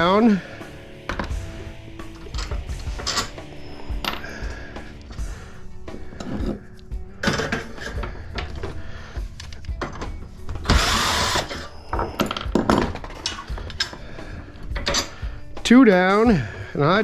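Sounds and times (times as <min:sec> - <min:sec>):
metal parts clicking and knocking: 0:09.4 - 0:14.0, 0:14.6 - 0:15.2
power driver spinning a bolt: 0:10.6 - 0:11.7.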